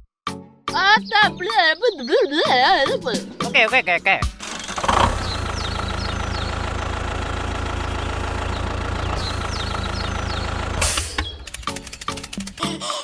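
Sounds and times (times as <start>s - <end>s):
engine idling: 3.2s - 12.6s.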